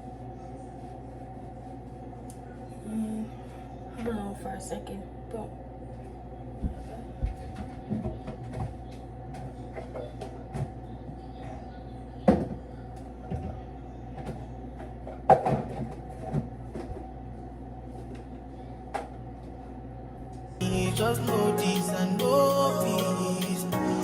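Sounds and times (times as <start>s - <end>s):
steady hum: 20.4s - 24.0s.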